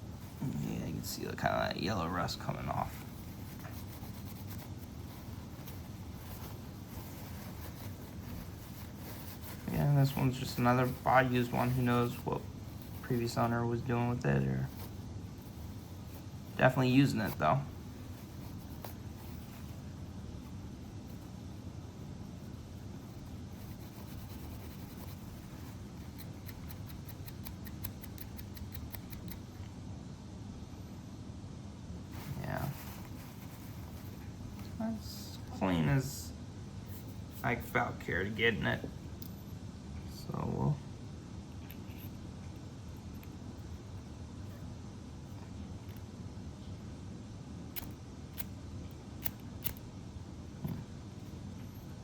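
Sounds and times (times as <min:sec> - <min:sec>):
steady low hum: 0:00.0 - 0:52.0
lighter rubbing and ticking: 0:26.1 - 0:29.5, 0:47.7 - 0:49.8.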